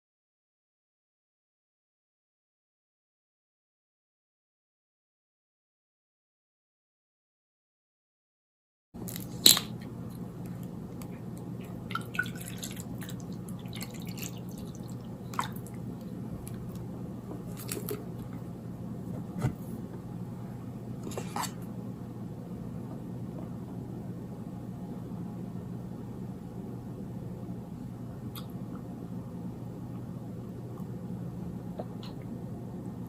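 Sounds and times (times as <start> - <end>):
sticky eating squishes: 9.0 - 18.4
low hum: 9.0 - 33.0.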